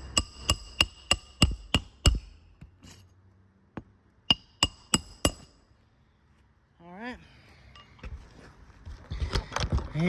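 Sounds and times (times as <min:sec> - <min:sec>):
hammer striking nails: 0:00.0 - 0:02.4, 0:04.3 - 0:05.5.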